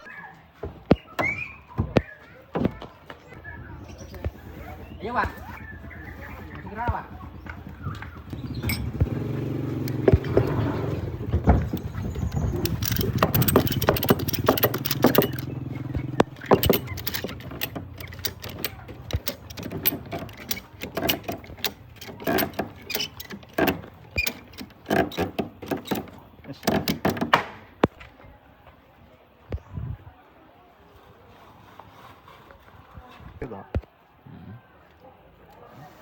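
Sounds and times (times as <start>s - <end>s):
low engine-like hum: 3.4s - 24.6s
knocks and clatters: 4.1s - 28.1s
jangling rattles: 4.6s - 27.4s.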